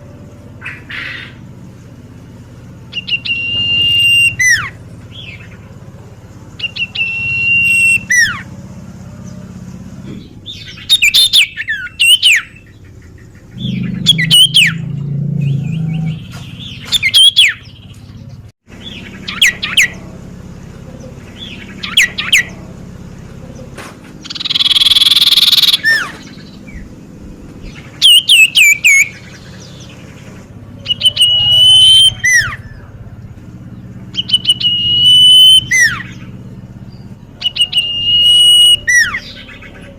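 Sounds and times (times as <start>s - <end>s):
bird whistling calls: 2.9s - 5.6s, 6.6s - 8.5s, 10.2s - 17.8s, 18.8s - 20.0s, 20.9s - 22.6s, 23.5s - 26.9s, 27.7s - 30.1s, 30.8s - 32.9s, 34.1s - 39.9s
bird down-slurred notes: 13.4s - 17.7s.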